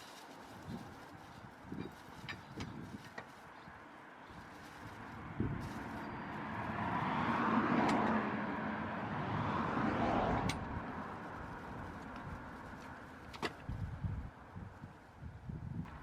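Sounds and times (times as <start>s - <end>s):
car driving past: 5.2s - 11.4s.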